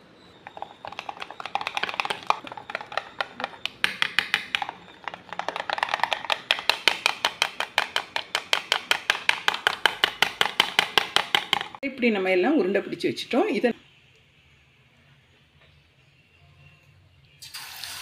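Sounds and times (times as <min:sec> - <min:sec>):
spoon beating batter in bowl: 0:00.4 - 0:11.8.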